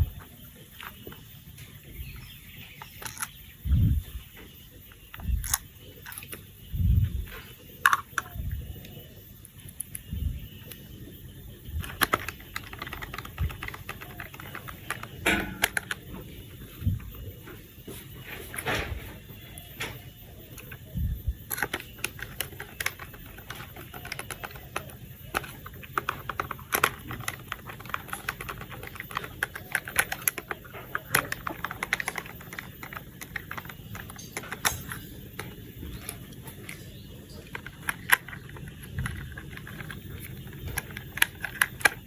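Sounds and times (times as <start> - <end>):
plastic toy parts clicking: 2.8 - 3.4, 5.1 - 6.4, 7.8 - 8.3, 11.8 - 16.0, 21.4 - 42.0.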